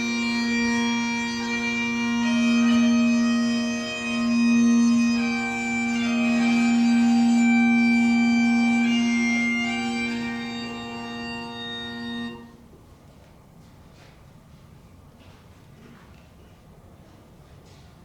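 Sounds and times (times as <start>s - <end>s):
bagpipes playing slow tune: 0.0s - 12.6s.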